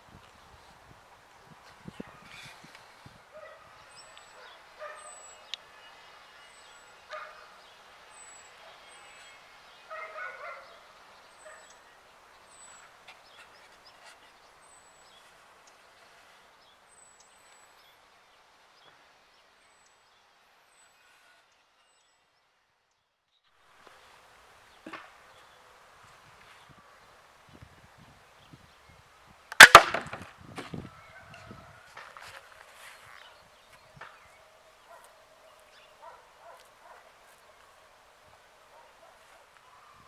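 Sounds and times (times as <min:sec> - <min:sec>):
distant dog barking: 0:03.3 - 0:05.6, 0:06.6 - 0:12.0, 0:30.9 - 0:33.3, 0:34.2 - 0:40.0.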